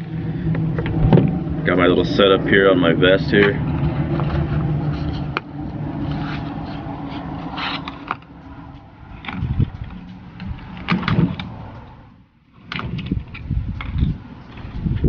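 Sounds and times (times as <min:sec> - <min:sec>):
microphone handling noise: 0:09.1 - 0:11.5.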